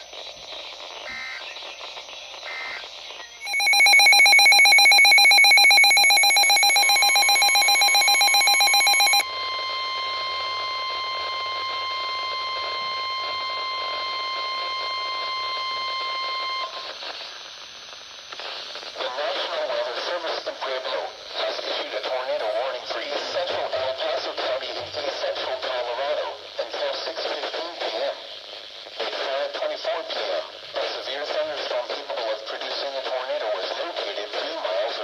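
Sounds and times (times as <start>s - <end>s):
rapidly pulsing alarm beep: 1.2s - 16.8s
warbling digital data squawks: 3.4s - 9.2s
steady warning alarm tone: 3.4s - 16.8s.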